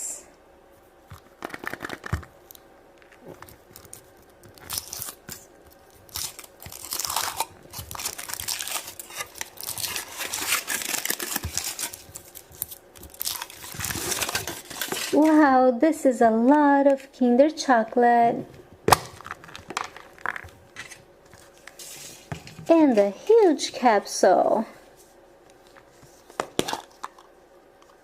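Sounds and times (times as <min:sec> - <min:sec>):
foil wrapper tearing and crinkling: 0:03.2 - 0:15.2.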